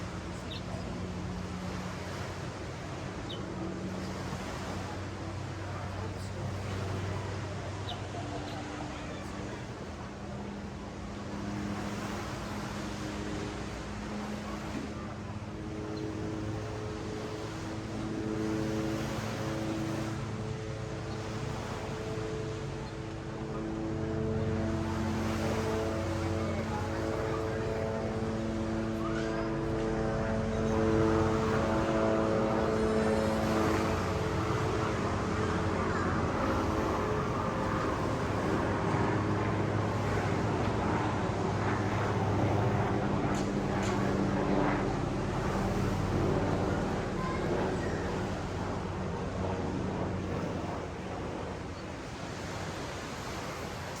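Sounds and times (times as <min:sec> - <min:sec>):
ocean surf: 0:00.0 - 0:54.0
motor drone: 0:10.4 - 0:51.7.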